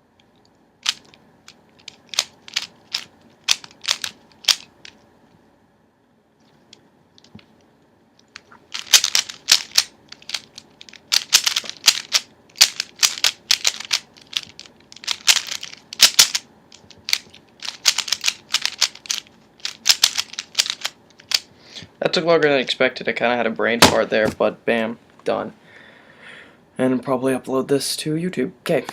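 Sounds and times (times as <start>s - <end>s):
plastic speed cube clicking: 0.8s - 1.1s, 1.8s - 5.0s, 8.7s - 21.4s.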